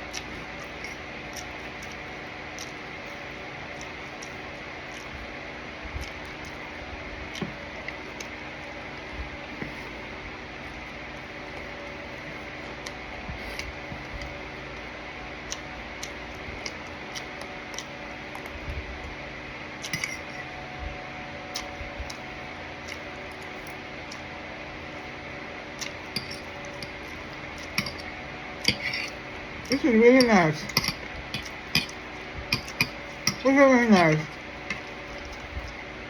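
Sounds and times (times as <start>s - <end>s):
low room hum: 0.0s - 36.0s
tableware clicks and clinks: 27.7s - 28.1s, 28.7s - 34.9s.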